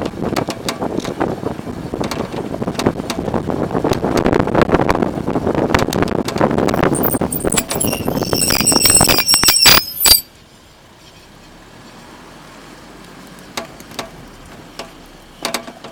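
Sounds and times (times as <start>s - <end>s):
rapid clattering suspension rattle: 6.2s - 10.3s
brake pads squealing: 6.7s - 10.4s.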